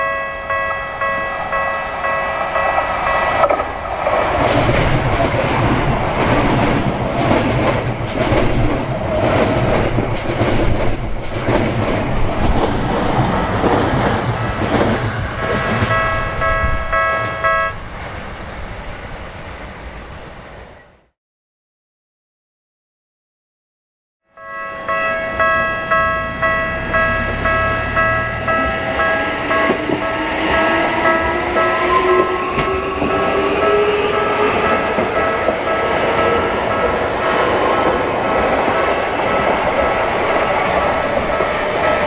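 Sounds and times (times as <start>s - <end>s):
crossing warning bell: 0.0s - 4.0s, 14.3s - 18.0s, 24.3s - 42.0s
wheels clattering on rails: 0.0s - 17.8s, 24.8s - 42.0s
train rumble: 0.0s - 21.0s, 24.6s - 42.0s.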